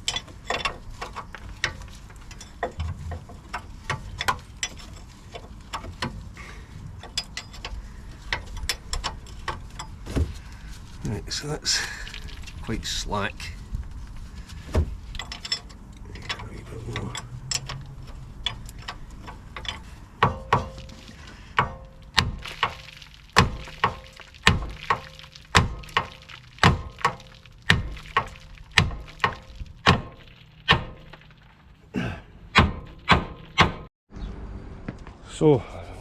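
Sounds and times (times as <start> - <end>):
hammer striking steel: 32.5 - 33.9.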